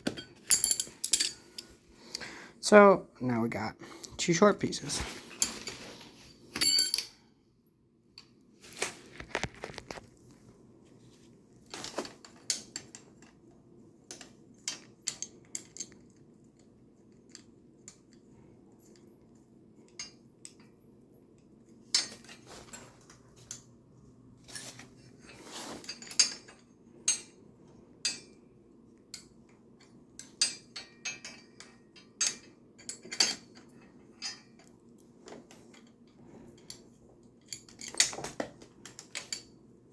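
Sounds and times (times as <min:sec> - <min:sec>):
metal parts clinking and scraping: 0:00.0 - 0:01.8, 0:06.6 - 0:07.2, 0:24.4 - 0:27.4, 0:35.3 - 0:39.5
faint steady hum: 0:00.0 - 0:39.9.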